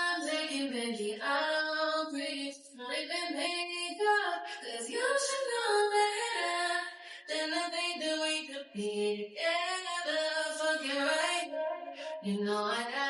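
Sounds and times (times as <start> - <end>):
woman singing: 0.0 - 13.0.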